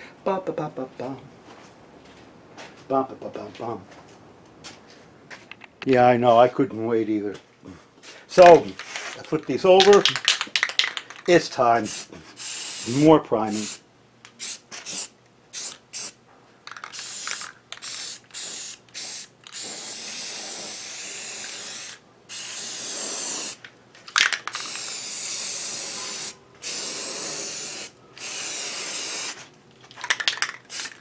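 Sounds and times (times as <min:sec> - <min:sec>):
aerosol spray can hissing: 0:11.9 - 0:13.8, 0:14.4 - 0:16.2, 0:16.9 - 0:23.6, 0:24.5 - 0:29.5, 0:30.7 - 0:31.0.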